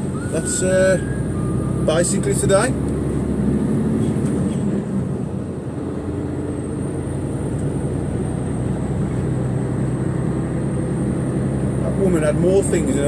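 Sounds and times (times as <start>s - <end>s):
lorry diesel engine droning: 0.0s - 13.0s
road noise: 0.0s - 13.0s.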